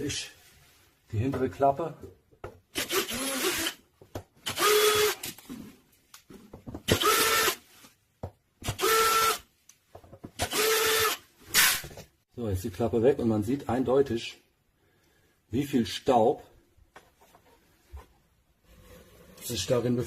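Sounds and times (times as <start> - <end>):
power screwdriver whirring: 2.8 - 3.8, 4.4 - 5.2, 6.9 - 7.6, 8.7 - 9.4, 10.4 - 11.8.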